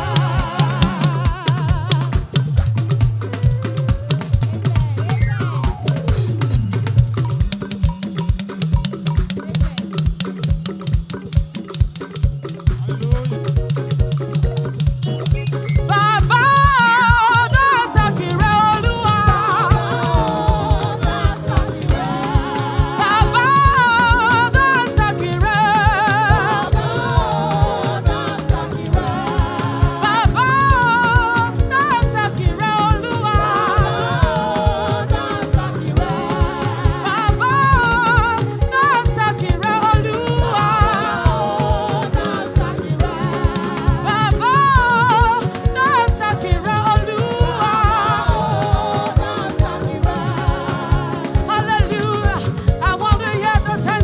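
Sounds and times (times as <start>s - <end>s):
choir singing: 0.0s - 2.4s, 15.9s - 53.1s
live band with fast drum beat: 0.0s - 54.0s.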